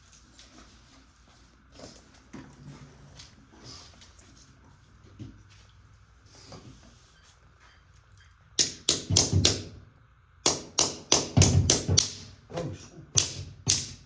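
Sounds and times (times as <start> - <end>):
sharp knocks by hand: 8.6 - 9.8, 10.4 - 12.3, 13.2 - 14.0.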